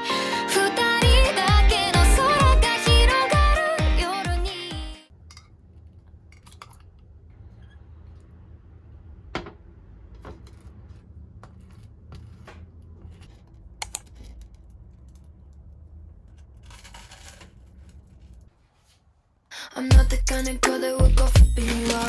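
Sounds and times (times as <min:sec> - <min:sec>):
household objects clicking: 0:13.8 - 0:15.7.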